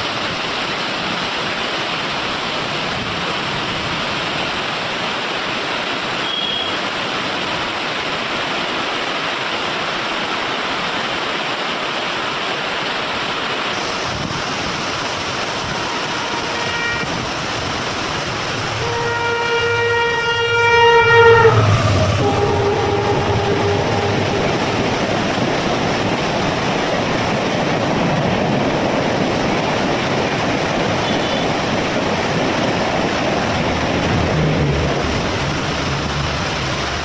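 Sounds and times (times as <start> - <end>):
train wheels rushing on rails: 0.0 - 37.0
locomotive horn: 15.6 - 17.6, 18.6 - 25.1, 31.0 - 31.6.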